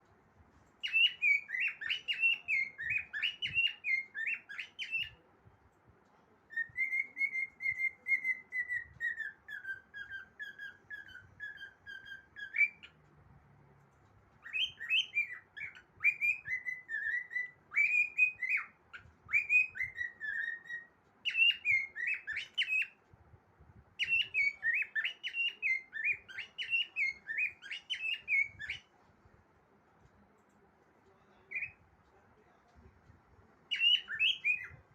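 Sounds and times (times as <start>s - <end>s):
cockatiel whistling: 0.8s - 5.2s, 6.5s - 13.0s, 14.4s - 23.0s, 24.0s - 28.9s, 31.5s - 31.8s, 33.7s - 34.9s.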